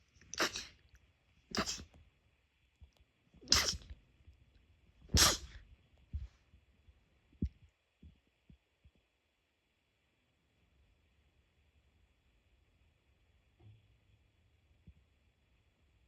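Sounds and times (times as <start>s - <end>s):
person sneezing: 0.3s - 0.8s, 1.5s - 1.9s, 3.4s - 3.9s, 5.1s - 5.6s.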